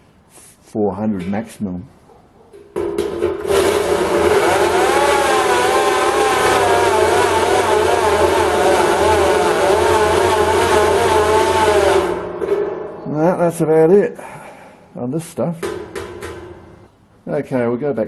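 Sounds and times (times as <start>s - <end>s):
electric drill cutting steel sheet: 3.2s - 12.3s.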